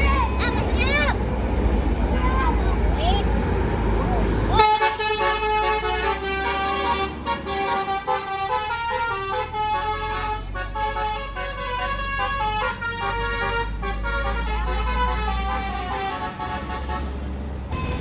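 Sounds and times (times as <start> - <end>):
bus engine rumble: 0.0 - 18.0
musical air horn melody: 4.6 - 18.0.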